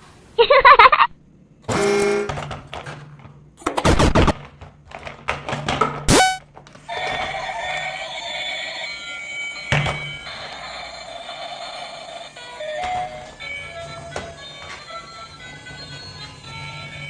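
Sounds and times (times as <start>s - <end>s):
brief pitched sound effect: 6.1s - 6.4s
loud burst: 6.1s - 6.4s
sharp hit: 6.1s - 6.4s.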